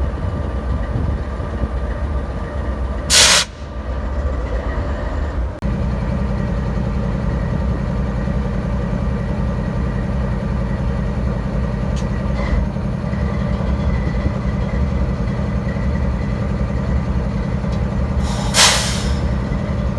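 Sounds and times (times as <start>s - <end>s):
locomotive idling rumble: 0.0s - 19.9s
loud hiss: 3.1s - 3.6s, 18.2s - 19.4s.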